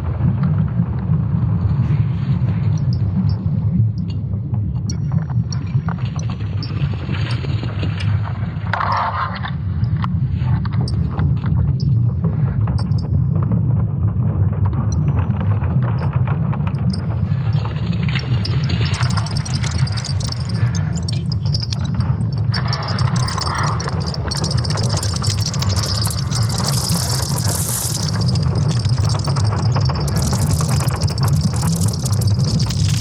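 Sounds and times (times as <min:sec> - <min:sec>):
crackles and creaks: 0:00.0 - 0:33.0
deep rumble: 0:12.2 - 0:33.0.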